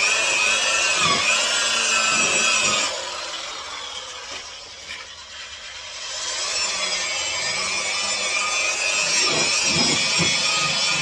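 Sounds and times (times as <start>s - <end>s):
electric polisher whining: 5.3s - 11.0s.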